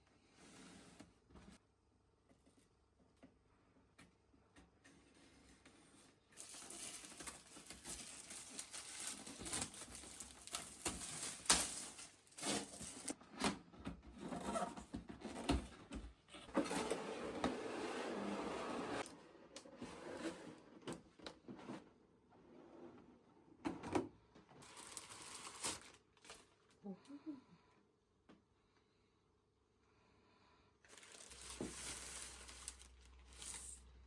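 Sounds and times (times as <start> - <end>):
packaging rustling and clicking: 6.4 - 13.2, 30.9 - 33.8.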